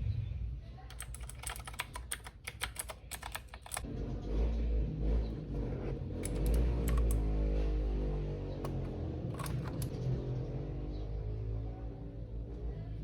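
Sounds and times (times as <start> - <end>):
mechanical keyboard key clicks: 0.9 - 3.8, 6.2 - 7.2, 8.6 - 10.0.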